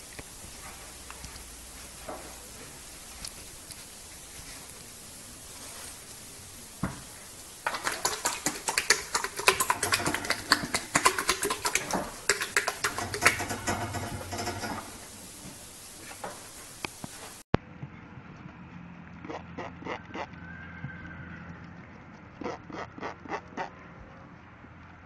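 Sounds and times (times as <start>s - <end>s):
horse flapping its lips: 0.0s - 17.4s.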